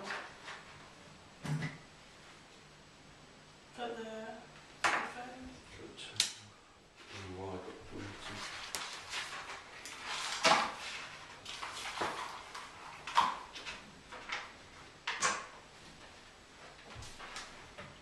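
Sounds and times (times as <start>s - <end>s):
paper rustling: 8.0s - 13.8s.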